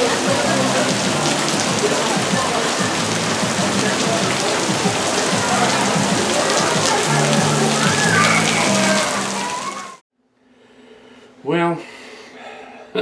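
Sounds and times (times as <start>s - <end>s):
faint voices of diners: 0.0s - 10.0s
heavy rain hiss: 0.0s - 10.0s.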